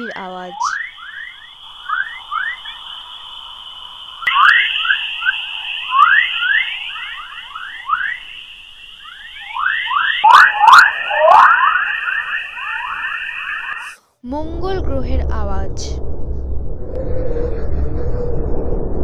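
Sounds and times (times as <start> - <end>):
rapid overlapping chirps: 0.0 - 13.9
steady high whistle: 0.0 - 14.0.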